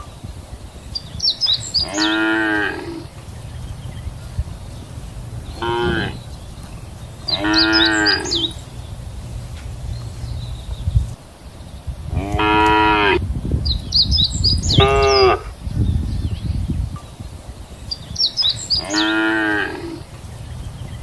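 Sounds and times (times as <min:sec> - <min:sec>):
cows mooing: 0:01.8 - 0:09.3, 0:12.1 - 0:13.2, 0:18.8 - 0:20.1
steady low rumble: 0:02.8 - 0:17.9, 0:20.0 - 0:21.0.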